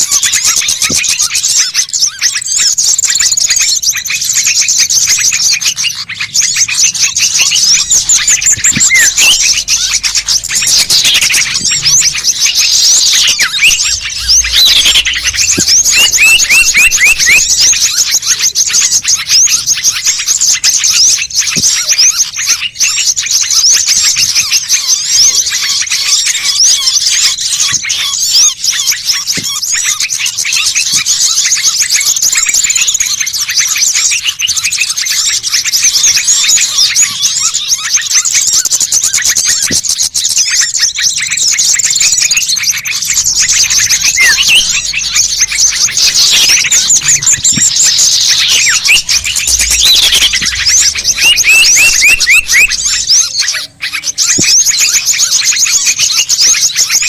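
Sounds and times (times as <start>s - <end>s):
falling whistled notes: 0.0s - 20.0s, 39.1s - 57.0s
small birds chirping: 0.0s - 57.0s.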